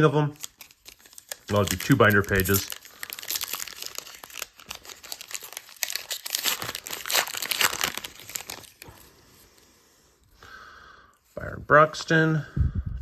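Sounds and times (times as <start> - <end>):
wrapper crinkling and tearing: 0.0 - 9.1.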